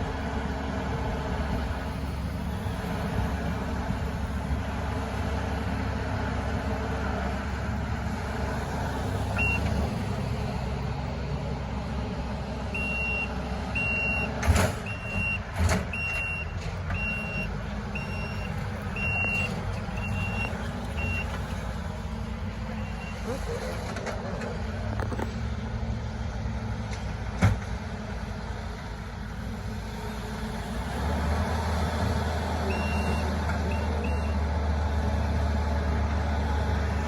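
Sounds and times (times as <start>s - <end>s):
heavy machine engine running: 0.0s - 37.0s
backup alarm beeping: 12.8s - 21.4s.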